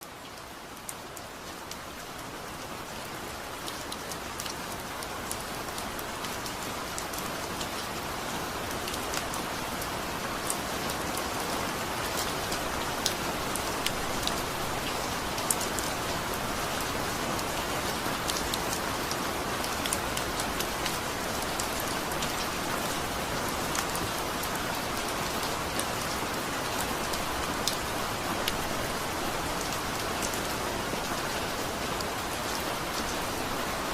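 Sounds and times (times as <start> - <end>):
steady rain hiss: 0.0 - 33.9.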